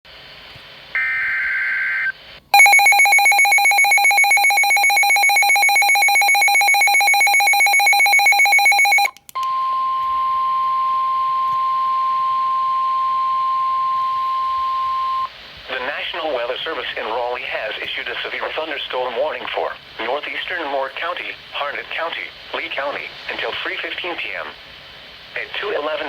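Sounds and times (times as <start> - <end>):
pulsing electronic alarm: 1.0 - 9.1
steady warning alarm tone: 2.6 - 15.3.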